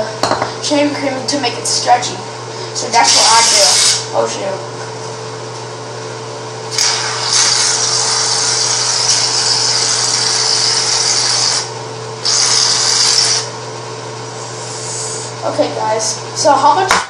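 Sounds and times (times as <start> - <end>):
aerosol can hissing: 3.1 - 4.0, 6.7 - 13.5.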